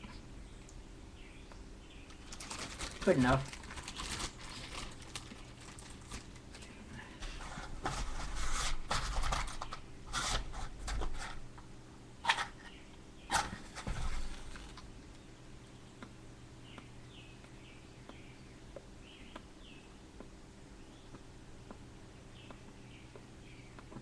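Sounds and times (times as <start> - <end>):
rustling and handling noises: 2.0 - 11.4, 12.2 - 15.3.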